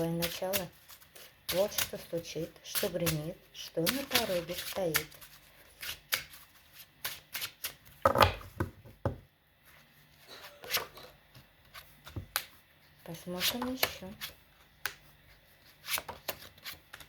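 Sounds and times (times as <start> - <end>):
cards being shuffled: 15.6 - 17.0.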